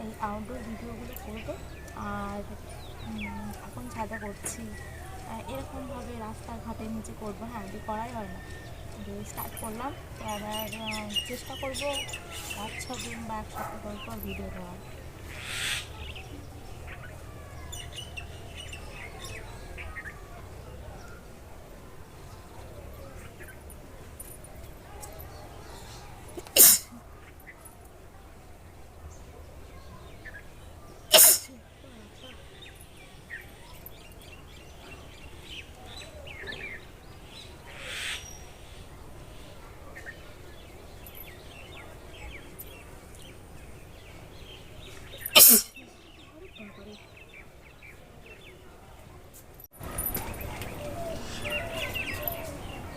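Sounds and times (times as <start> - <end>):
small birds chirping: 0.0 - 52.9
loud hiss: 26.5 - 26.9, 31.1 - 31.5, 45.4 - 45.8.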